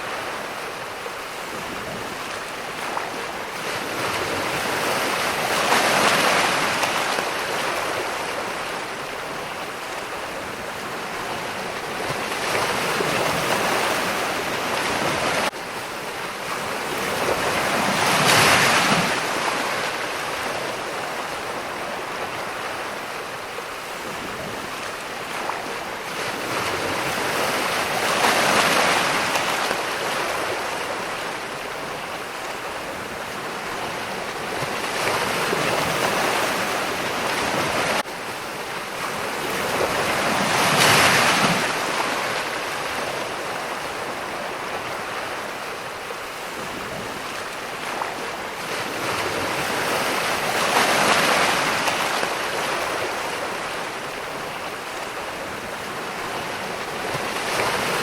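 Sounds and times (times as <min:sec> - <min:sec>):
ocean waves breaking: 0:00.0 - 0:58.0.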